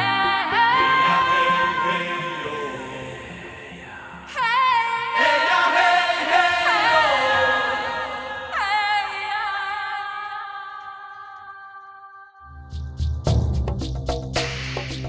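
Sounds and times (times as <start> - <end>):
music: 0.0 - 4.8, 11.1 - 15.0
person singing long notes: 0.0 - 10.4.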